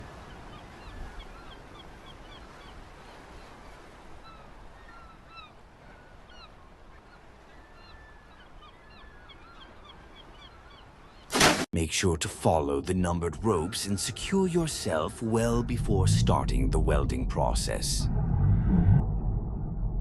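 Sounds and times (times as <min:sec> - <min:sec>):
bird calls and chirps: 0:00.2 - 0:11.3.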